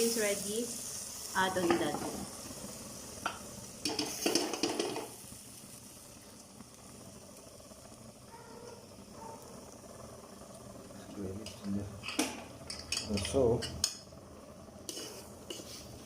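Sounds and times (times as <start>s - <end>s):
pan sizzling: 0.0s - 16.0s
beans clattering into a pan: 3.2s - 5.2s.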